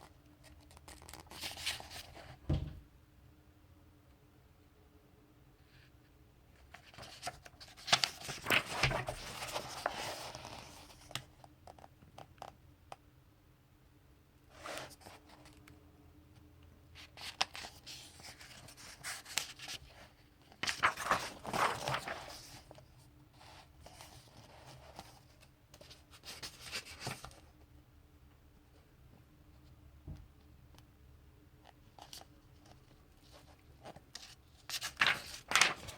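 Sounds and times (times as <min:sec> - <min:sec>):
paper pages rustling: 0:00.4 - 0:02.3, 0:06.7 - 0:11.2, 0:17.1 - 0:22.8, 0:23.8 - 0:27.4, 0:33.4 - 0:35.9.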